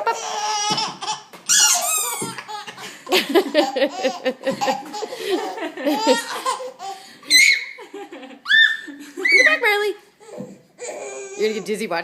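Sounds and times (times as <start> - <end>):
baby laughing: 0.0 - 9.6.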